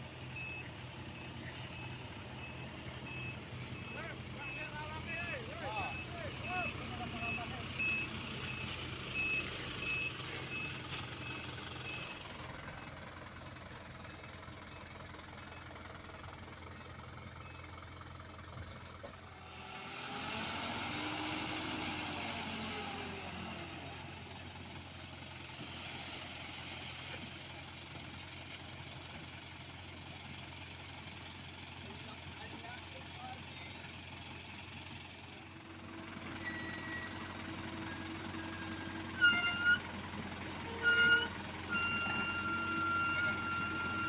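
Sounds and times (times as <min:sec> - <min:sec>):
heavy machinery diesel engines: 0:00.0 - 0:44.0
reversing alarm beeping: 0:40.7 - 0:44.0.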